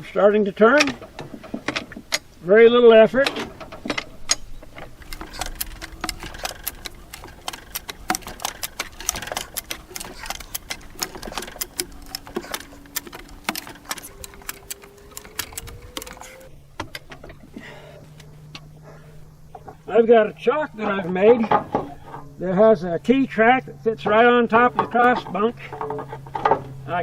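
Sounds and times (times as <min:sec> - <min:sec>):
jack metallic clicking: 0:00.0 - 0:27.0
faint creak rising in pitch: 0:03.8 - 0:20.0.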